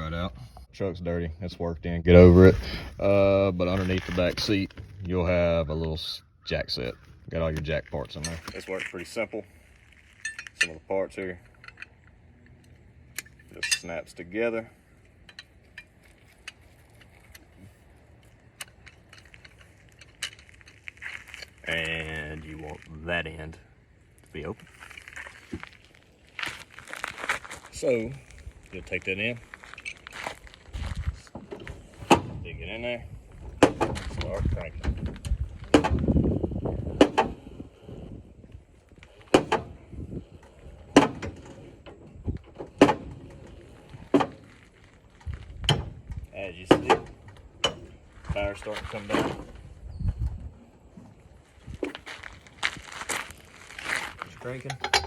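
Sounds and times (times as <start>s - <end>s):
metal parts clicking and clinking: 10.0s - 10.8s, 11.4s - 14.0s, 18.2s - 21.9s, 54.4s - 55.0s.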